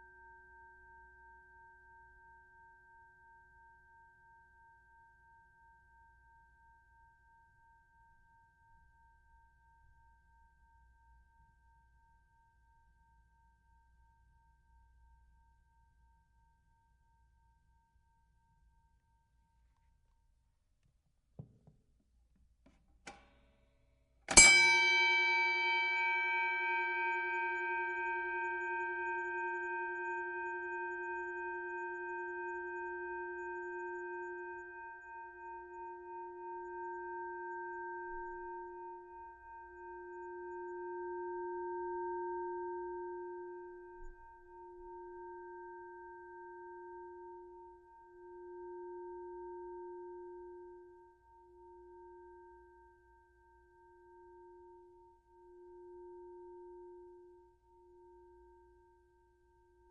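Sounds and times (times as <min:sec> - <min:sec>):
boxing bell ringing: 0:24.3 - 0:26.2.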